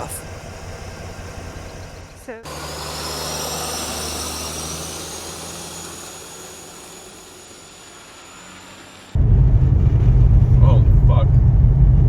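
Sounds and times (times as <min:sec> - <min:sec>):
aircraft engine whine: 0:00.0 - 0:12.0
steady low hum: 0:00.0 - 0:12.0.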